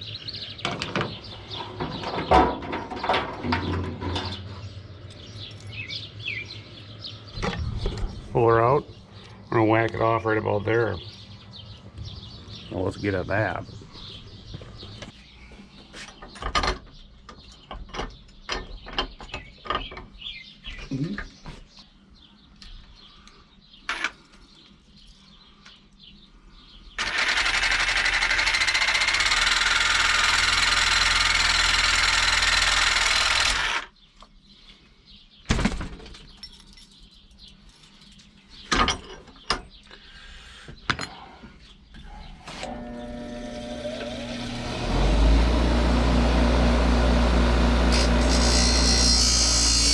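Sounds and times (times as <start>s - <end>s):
reciprocating saw cutting metal: 27.0s - 33.9s, 42.6s - 49.9s.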